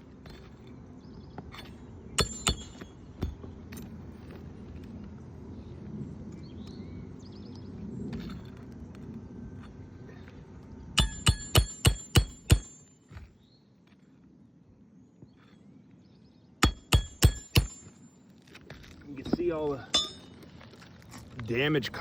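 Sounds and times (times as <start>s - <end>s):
hammer striking roofing nails: 2.2s - 3.4s, 11.0s - 12.8s, 16.6s - 18.0s.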